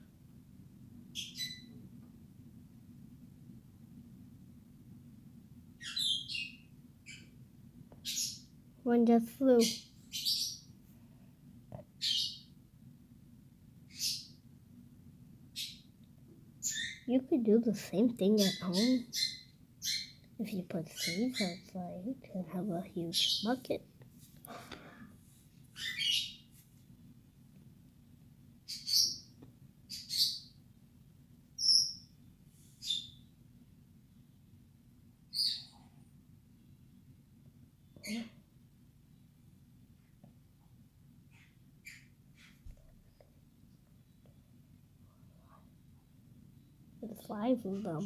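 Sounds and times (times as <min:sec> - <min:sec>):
small birds chirping: 0:01.0 - 0:01.9, 0:05.8 - 0:10.8, 0:11.7 - 0:12.6, 0:13.8 - 0:14.5, 0:15.5 - 0:23.9, 0:25.6 - 0:26.6, 0:28.6 - 0:30.7, 0:31.5 - 0:33.4, 0:35.3 - 0:36.9, 0:37.8 - 0:38.5, 0:41.2 - 0:44.6, 0:45.2 - 0:48.0.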